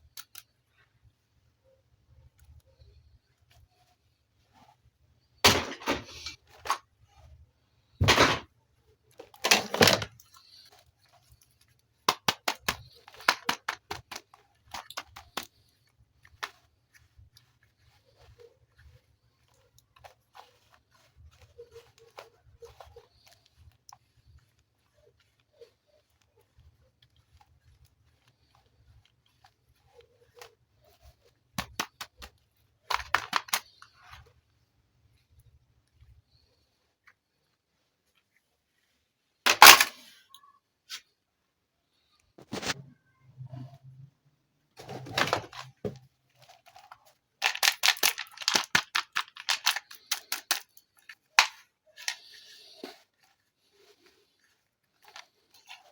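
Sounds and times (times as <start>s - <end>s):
plastic toy parts clicking: 0.0s - 0.6s, 9.1s - 10.4s, 12.0s - 15.6s, 31.6s - 34.3s, 39.5s - 40.1s, 46.7s - 52.4s
plastic toys and packaging rustling: 0.0s - 55.9s
packaging rustling: 9.2s - 17.9s, 44.8s - 55.9s
plastic crinkling: 44.8s - 55.9s.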